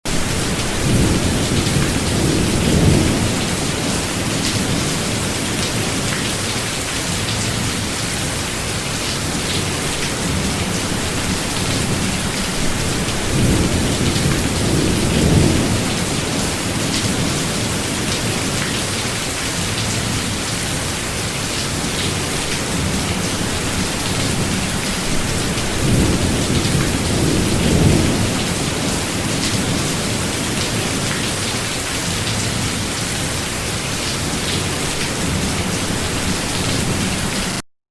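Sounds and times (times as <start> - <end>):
thunder rumbling: 0.1 - 6.2, 10.2 - 18.6, 21.8 - 31.4
rain hissing: 0.1 - 37.6.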